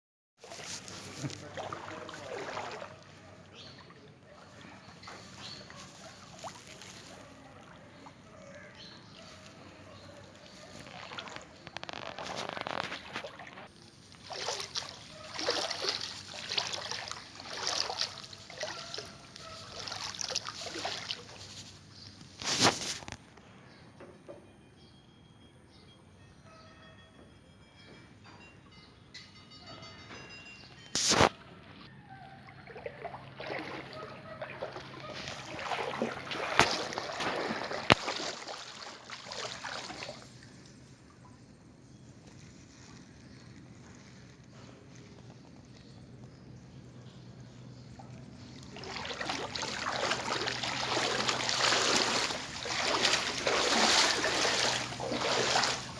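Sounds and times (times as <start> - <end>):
floodwater sloshing and splashing: 0.4 - 8.3, 9.1 - 23.1, 32.1 - 41.5, 47.8 - 55.9.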